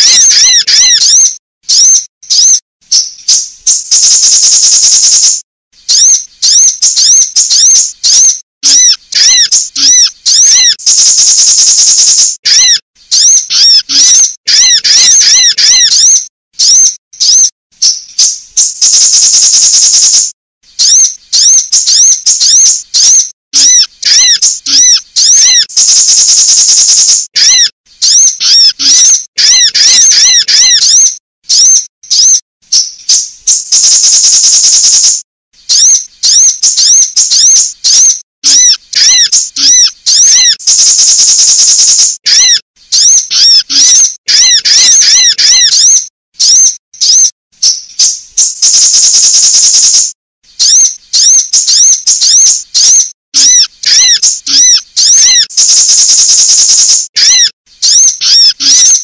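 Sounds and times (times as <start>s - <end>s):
buzzy bird trill: 0.0s - 59.0s
sunbird chirps and whistles: 0.0s - 59.0s.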